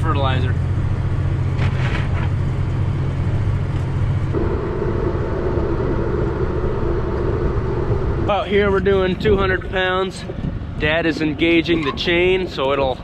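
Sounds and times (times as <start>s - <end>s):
tractor engine running: 0.0s - 13.0s
higher steady hum: 2.2s - 11.6s.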